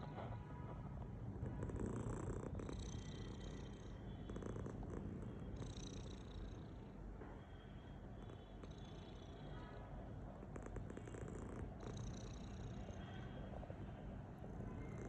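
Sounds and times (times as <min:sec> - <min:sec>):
cat snoring: 0:01.3 - 0:07.0, 0:07.8 - 0:09.8, 0:10.4 - 0:13.0.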